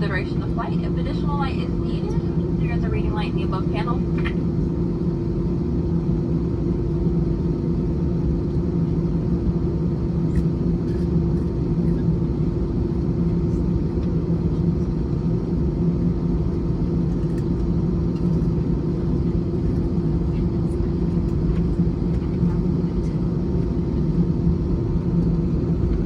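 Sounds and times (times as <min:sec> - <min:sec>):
airliner cabin engine hum: 0:00.0 - 0:26.0.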